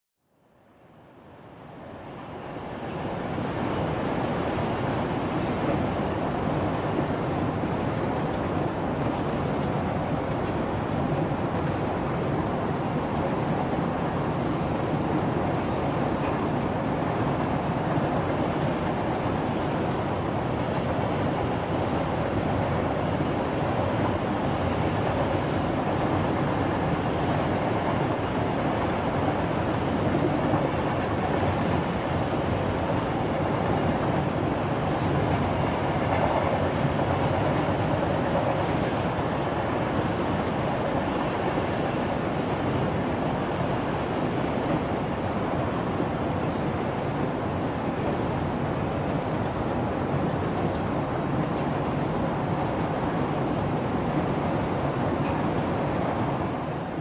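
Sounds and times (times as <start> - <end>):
train wheels clattering on track: 17.4 - 45.3.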